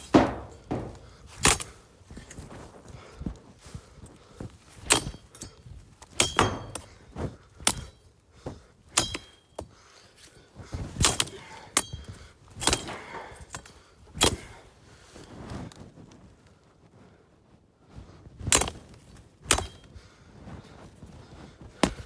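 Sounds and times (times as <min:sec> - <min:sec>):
metal blade chopping stalks: 0:00.0 - 0:01.8, 0:04.9 - 0:05.5, 0:06.2 - 0:07.0, 0:07.6 - 0:07.9, 0:09.0 - 0:09.4, 0:11.0 - 0:11.9, 0:12.6 - 0:14.5, 0:18.6 - 0:18.8, 0:19.5 - 0:19.9.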